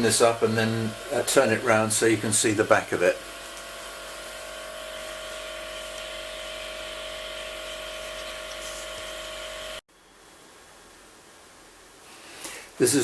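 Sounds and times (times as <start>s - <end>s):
bandsaw motor and gear whine: 0.0s - 9.8s.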